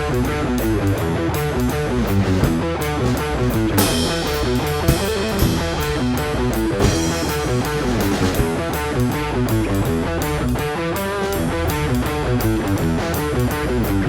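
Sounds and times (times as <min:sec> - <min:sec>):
electric guitar: 0:00.0 - 0:14.0
steady drum beat: 0:00.0 - 0:14.0
cymbal crashes: 0:02.4 - 0:09.0.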